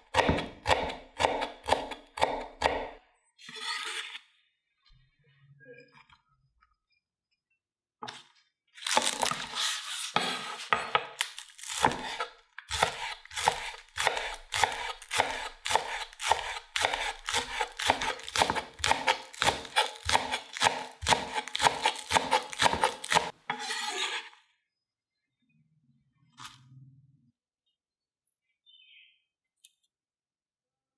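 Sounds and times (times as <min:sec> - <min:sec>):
knife chopping on cutting board: 0:00.0 - 0:03.0, 0:10.2 - 0:24.3.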